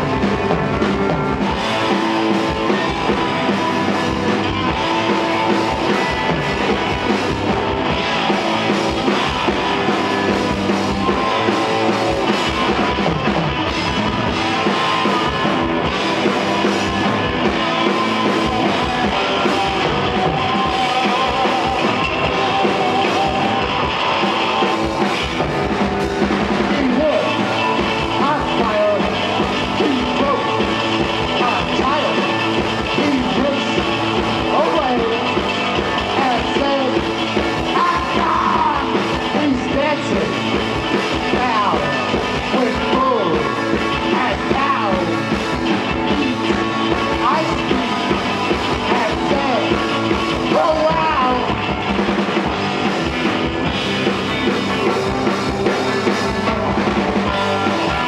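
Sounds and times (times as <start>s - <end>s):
drum kit beat: 0.0s - 58.0s
rock band playing live: 0.0s - 58.0s.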